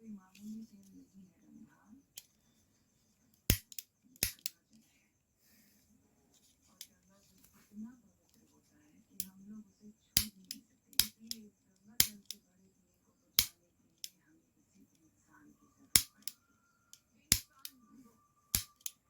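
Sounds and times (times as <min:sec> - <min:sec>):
toy pistol snaps: 0:03.5 - 0:04.6, 0:10.2 - 0:11.4, 0:12.0 - 0:12.4, 0:13.4 - 0:13.6, 0:16.0 - 0:16.4, 0:17.3 - 0:17.8, 0:18.5 - 0:19.0.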